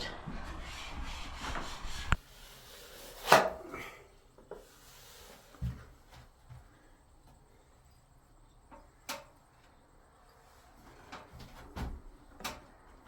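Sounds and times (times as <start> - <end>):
quiet background hum: 0.0 - 13.0.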